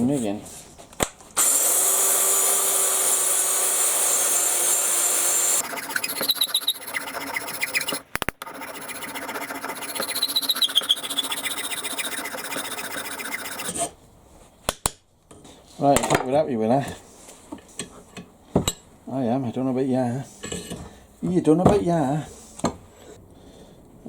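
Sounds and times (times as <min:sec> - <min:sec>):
power sander running: 0:01.4 - 0:13.7
scratchy grinding with squeals: 0:05.0 - 0:13.9.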